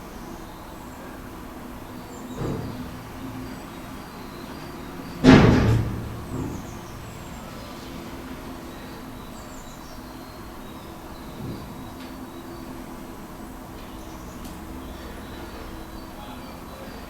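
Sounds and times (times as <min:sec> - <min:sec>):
sudden thump: 0:05.2 - 0:07.0.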